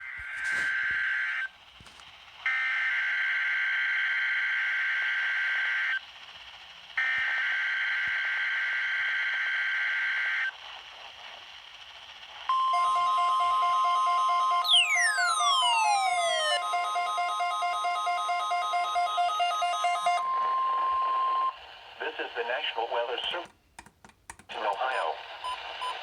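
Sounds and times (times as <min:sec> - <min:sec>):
radio static: 0:18.8 - 0:23.5, 0:24.5 - 0:26.0.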